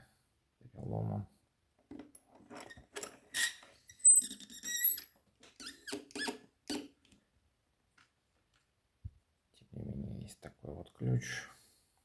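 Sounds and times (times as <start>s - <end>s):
metal lock parts squeaking and scraping: 2.3s - 6.8s.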